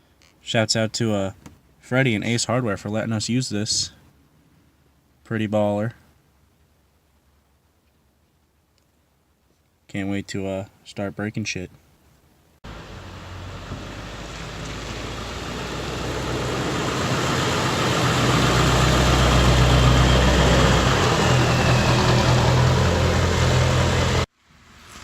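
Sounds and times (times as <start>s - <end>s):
vehicle engine droning: 12.6s - 25.0s.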